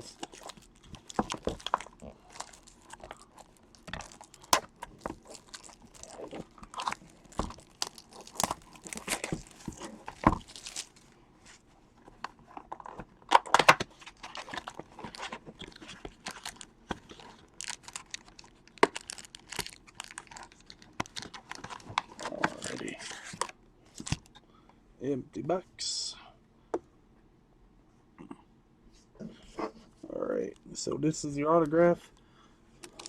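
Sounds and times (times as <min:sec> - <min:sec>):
plastic wrapping crinkling and tearing: 0:00.0 - 0:11.1, 0:12.6 - 0:24.3.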